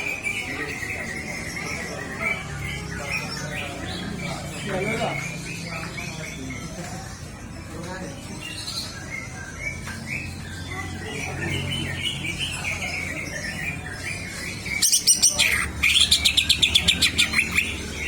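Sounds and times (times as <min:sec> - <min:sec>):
bird singing varied warble: 0:00.0 - 0:18.0.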